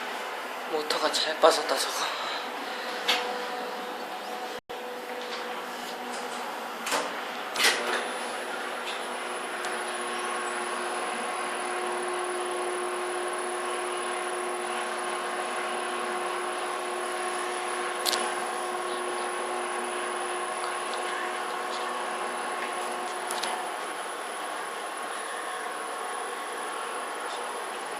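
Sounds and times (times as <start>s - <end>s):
elevator motor humming: 0.0s - 27.9s.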